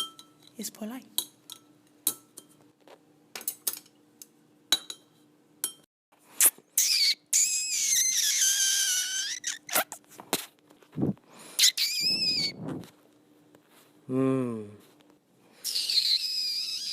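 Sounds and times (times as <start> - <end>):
loud high squeak: 6.8 - 10.0, 11.6 - 12.6, 15.6 - 16.9.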